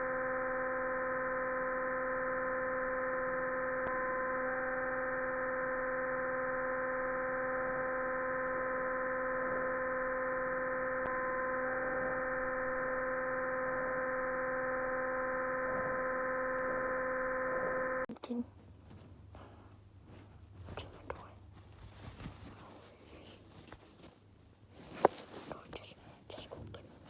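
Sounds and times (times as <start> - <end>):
electronic buzzing drone: 0.0 - 18.1.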